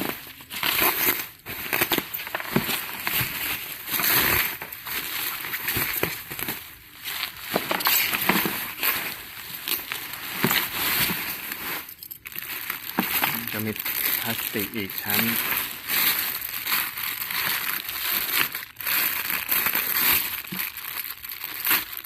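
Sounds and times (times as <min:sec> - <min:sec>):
crackles and clicks: 0:00.0 - 0:22.0
plastic packaging rustling: 0:00.0 - 0:22.0.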